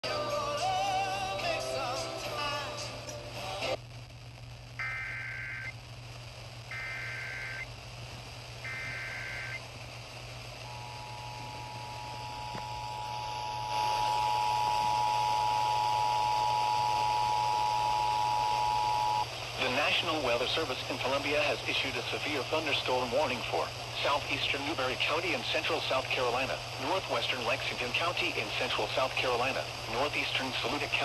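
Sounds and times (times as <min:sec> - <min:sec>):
radio hiss: 0:00.1 - 0:31.0
warbling data tones: 0:04.8 - 0:05.7, 0:06.7 - 0:07.7, 0:08.6 - 0:09.7
two-tone attention signal: 0:08.7 - 0:09.6.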